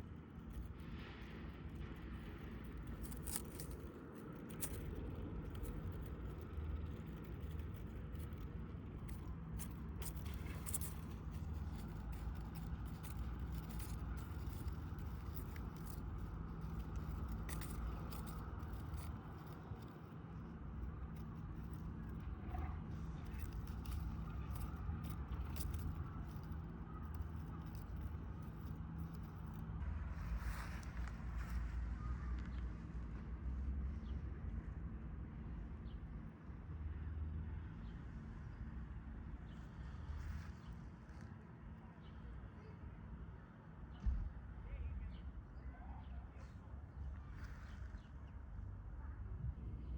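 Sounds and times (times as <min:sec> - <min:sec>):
grass rustling and crackling: 0:00.0 - 0:32.1
small birds chirping: 0:00.0 - 0:32.7
steady low rumble: 0:00.0 - 0:45.6, 0:46.3 - 0:49.9
low background hum: 0:00.0 - 0:49.9.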